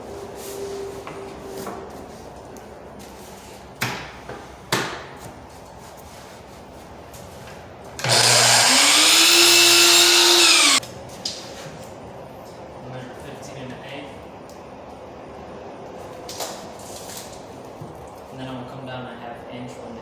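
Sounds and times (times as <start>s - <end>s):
miter saw whining: 8.0s - 10.8s.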